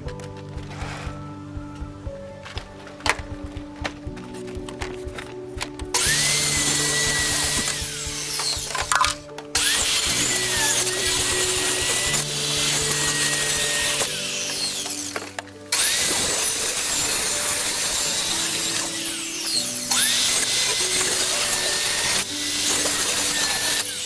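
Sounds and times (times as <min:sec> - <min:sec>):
background music: 0:00.0 - 0:24.0
power saw cutting plywood: 0:05.9 - 0:08.9, 0:09.6 - 0:24.0.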